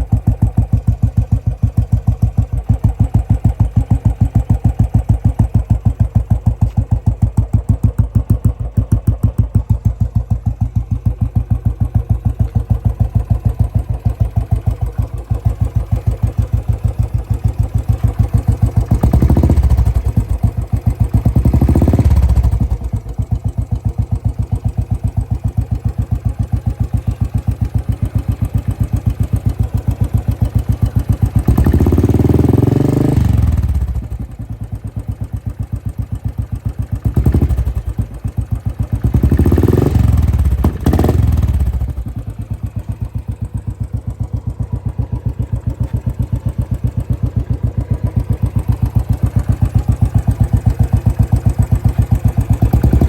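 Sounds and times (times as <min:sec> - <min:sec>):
motorcycle engine idling: 0:00.0 - 0:53.0
motorcycle throttle revving: 0:17.0 - 0:23.0, 0:31.4 - 0:34.1, 0:39.0 - 0:42.2, 0:51.8 - 0:53.0.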